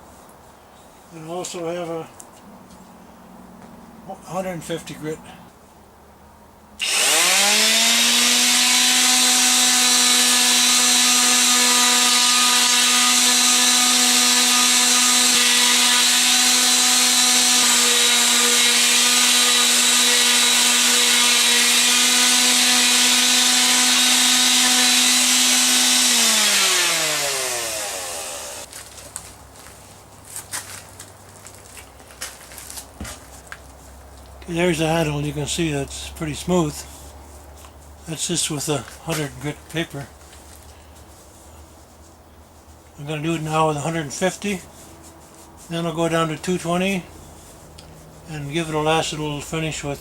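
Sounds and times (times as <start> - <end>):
electric palm sander running: 6.8 - 28.7.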